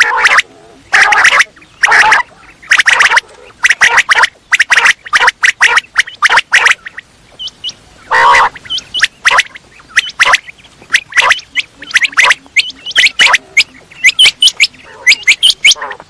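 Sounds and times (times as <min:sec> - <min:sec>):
quail calling: 0:00.0 - 0:16.0.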